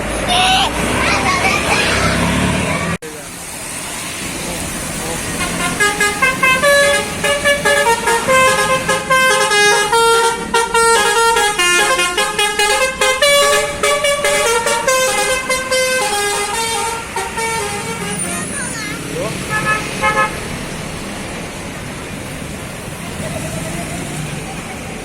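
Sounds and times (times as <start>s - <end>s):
musical bus horn tune: 5.3s - 18.6s, 19.4s - 20.5s.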